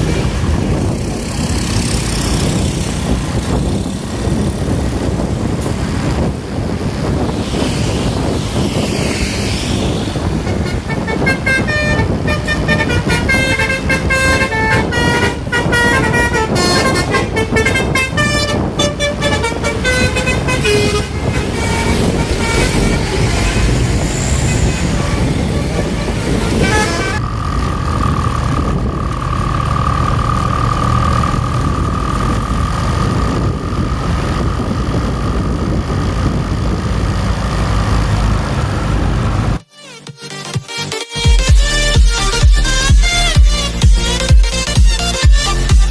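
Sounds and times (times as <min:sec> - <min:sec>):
musical air horn tune: 0:10.4 - 0:27.2.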